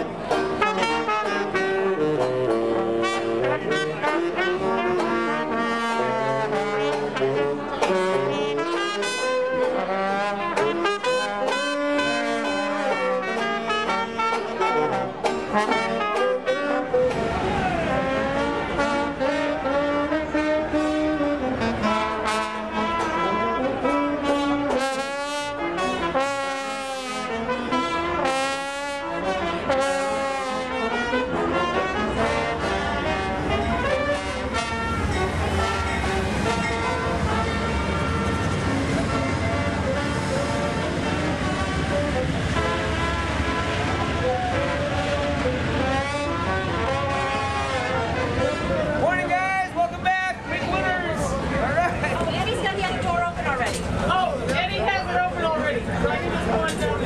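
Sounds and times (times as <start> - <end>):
jazz band playing: 0.0 - 57.0
rushing noise: 33.4 - 52.2.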